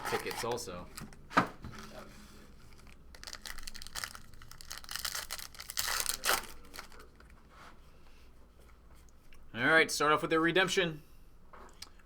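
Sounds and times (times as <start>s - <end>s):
card wrappers tearing and crinkling: 2.7s - 7.2s.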